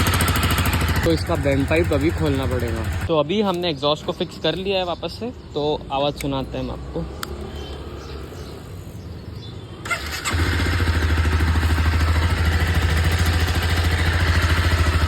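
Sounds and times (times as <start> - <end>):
motorcycle engine starting and idling: 0.0 - 3.1, 9.8 - 15.0.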